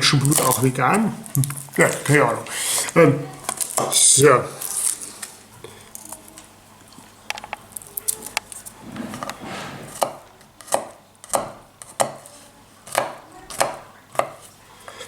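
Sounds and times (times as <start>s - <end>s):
knife chopping on cutting board: 9.8s - 14.5s.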